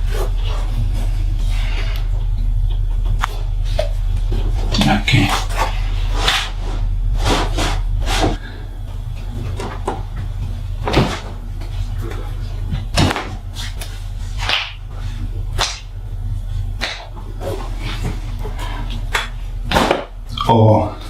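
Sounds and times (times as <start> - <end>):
steady low hum: 0.0 - 21.0
hands smacking a body: 12.9 - 14.8, 16.8 - 17.1.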